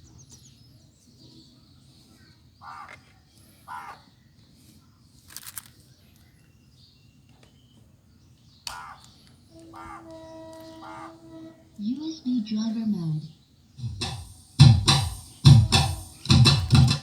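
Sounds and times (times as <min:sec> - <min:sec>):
crows cawing: 0:02.6 - 0:04.1, 0:08.6 - 0:11.7.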